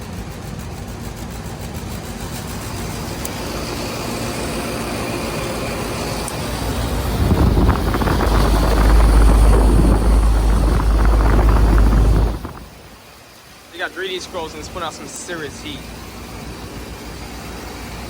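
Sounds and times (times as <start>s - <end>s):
condensing unit fan and compressor: 0.0s - 18.0s
deep low rumble: 6.6s - 12.9s.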